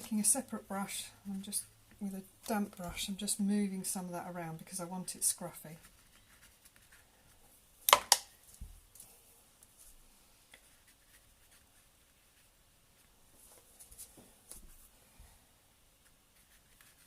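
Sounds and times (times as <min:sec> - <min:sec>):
paintbrush scratchy strokes: 0:10.6 - 0:14.0, 0:16.0 - 0:17.0.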